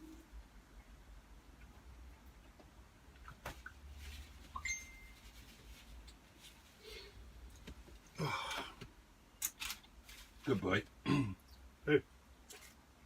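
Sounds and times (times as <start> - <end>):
rustle: 3.6 - 7.1.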